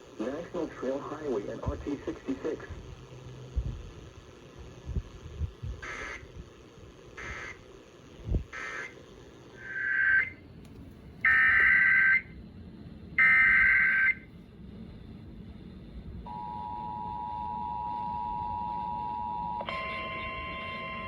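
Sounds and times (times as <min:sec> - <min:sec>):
harsh buzzy data bursts: 0:04.8 - 0:10.4
dissonant two-tone attention signal: 0:16.3 - 0:21.0.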